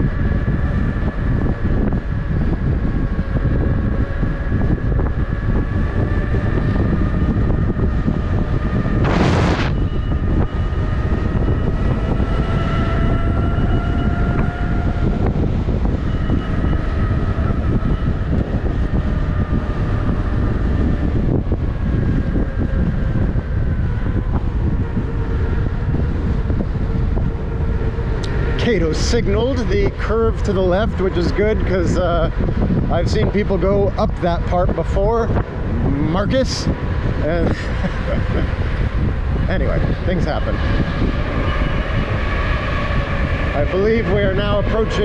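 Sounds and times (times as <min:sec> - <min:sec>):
electric motor whining: 0:00.0 - 0:45.0
wind rushing over microphone: 0:00.0 - 0:45.0.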